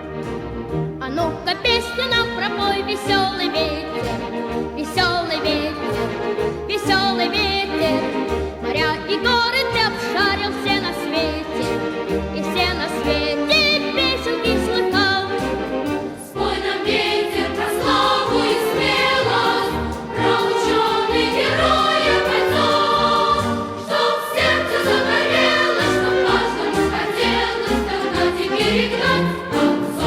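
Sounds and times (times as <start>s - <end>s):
orchestral accompaniment: 0.0s - 30.0s
choir singing: 16.1s - 30.0s.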